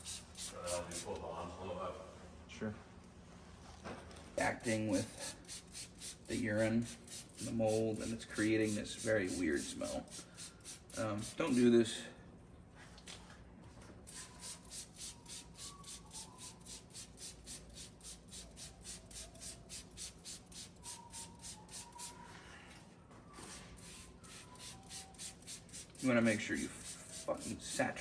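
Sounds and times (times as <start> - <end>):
spray bottle squirts: 14.1 - 22.3, 23.4 - 27.8.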